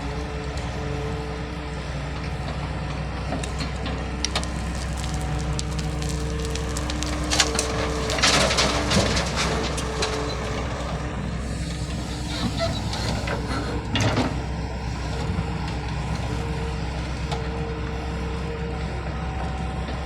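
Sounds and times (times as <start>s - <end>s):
diesel engine running: 0.0s - 20.0s
material cracking and splintering: 4.2s - 9.9s.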